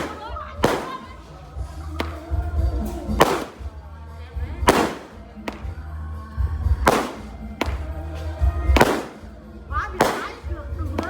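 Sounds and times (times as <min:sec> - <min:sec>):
loud firework bangs: 0:00.0 - 0:02.4, 0:03.1 - 0:03.8, 0:04.6 - 0:05.9, 0:06.7 - 0:09.4, 0:10.0 - 0:11.0
thin firework crack: 0:00.0 - 0:03.9, 0:04.6 - 0:06.0, 0:06.7 - 0:11.0.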